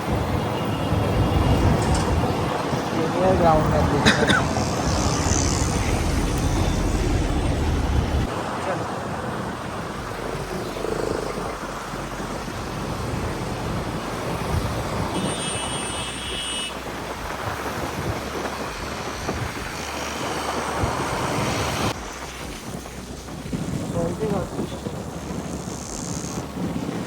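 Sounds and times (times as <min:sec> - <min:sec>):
vehicle and road rumble: 0:00.0 - 0:27.0
wind buffeting microphone: 0:00.0 - 0:27.0.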